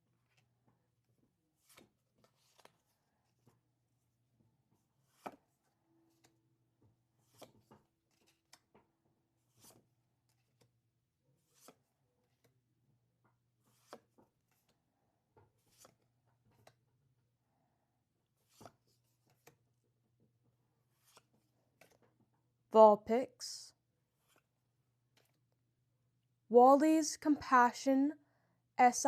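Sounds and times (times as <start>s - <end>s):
trading cards clicking and sliding: 1.6s - 3.6s, 4.8s - 6.4s, 7.2s - 8.8s, 9.4s - 10.8s, 11.4s - 12.6s, 13.6s - 14.8s, 15.6s - 16.8s, 18.4s - 19.6s, 20.9s - 22.1s.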